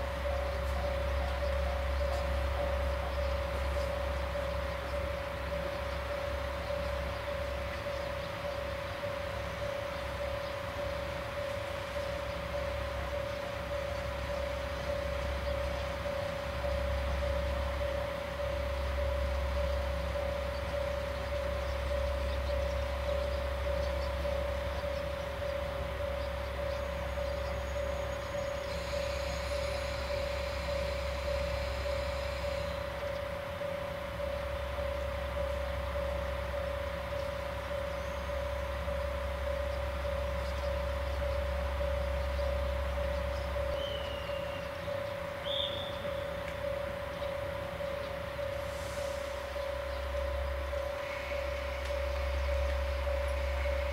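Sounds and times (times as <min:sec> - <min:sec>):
diesel engine idling: 0:00.0 - 0:53.9
pulsing steady tone: 0:00.0 - 0:53.9.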